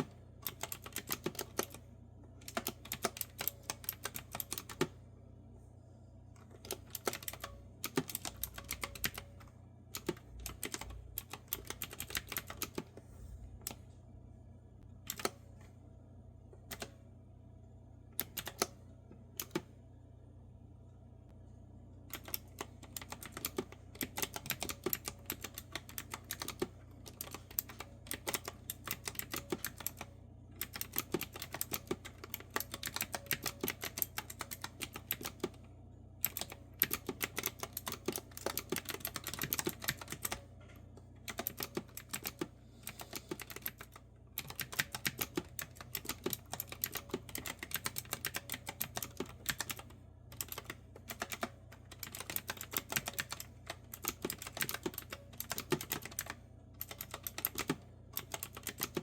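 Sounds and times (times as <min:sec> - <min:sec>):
clicky keyboard keystrokes: 0:00.0 - 0:01.8, 0:02.4 - 0:05.0, 0:06.5 - 0:09.3, 0:10.0 - 0:12.9, 0:15.1 - 0:15.4, 0:18.2 - 0:18.8, 0:19.4 - 0:19.7, 0:22.1 - 0:35.6, 0:36.2 - 0:40.4, 0:41.3 - 0:42.5, 0:43.1 - 0:59.0.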